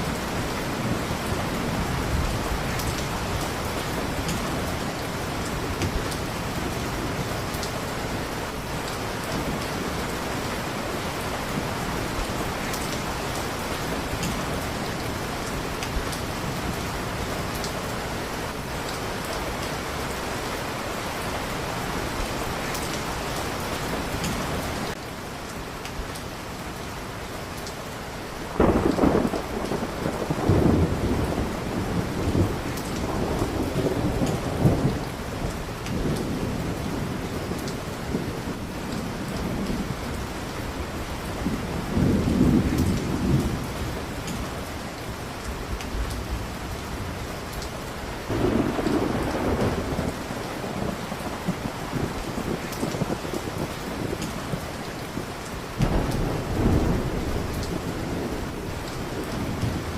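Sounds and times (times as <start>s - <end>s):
steady rain: 0.0s - 59.9s
thunder rolling: 28.6s - 35.2s, 41.4s - 43.8s, 48.3s - 54.7s, 55.8s - 59.9s.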